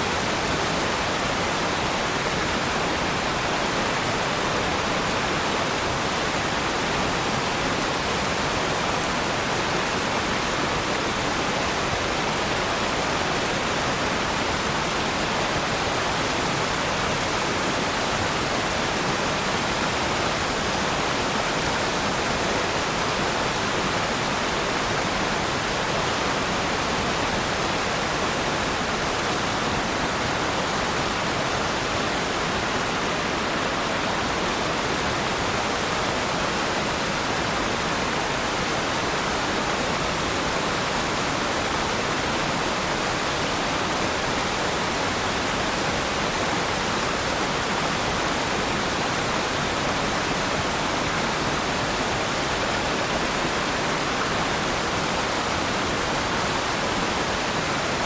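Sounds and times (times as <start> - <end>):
waterfall rushing: 0.0 - 58.0.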